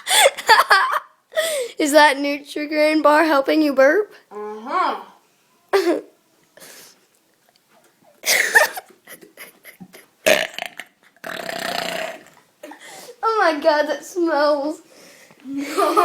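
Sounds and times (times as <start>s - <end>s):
child burping: 4.3s - 6.1s, 10.3s - 12.8s.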